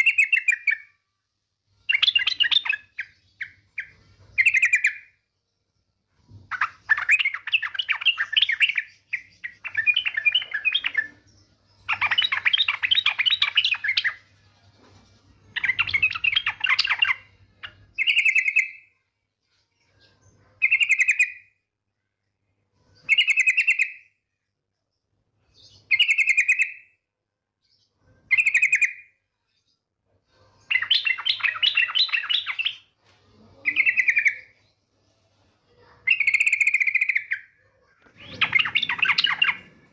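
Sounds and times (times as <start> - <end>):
bird chattering trill: 38.2 - 39.9.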